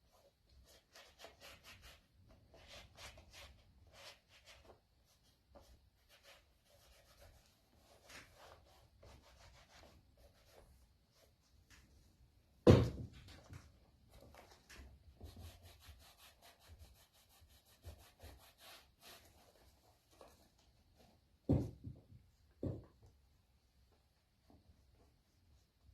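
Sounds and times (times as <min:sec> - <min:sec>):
loud knock: 0:12.6 - 0:13.1.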